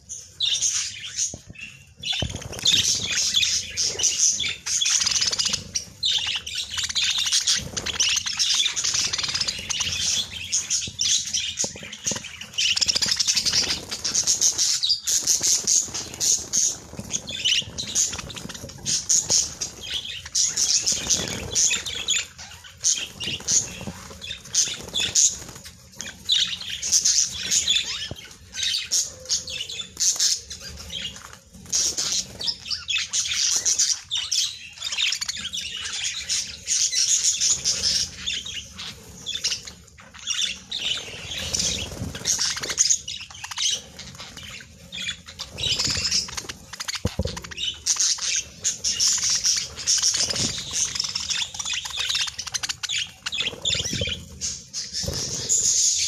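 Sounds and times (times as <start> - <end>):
budgerigars chattering and chirping: 0.0 - 56.0.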